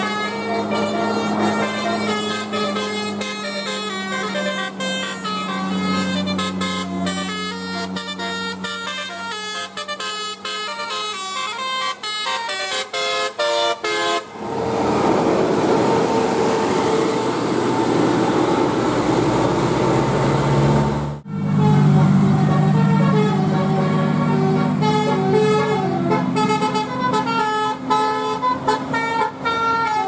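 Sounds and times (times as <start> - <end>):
bus air horn playing a tune: 0.0 - 14.4, 21.2 - 30.0.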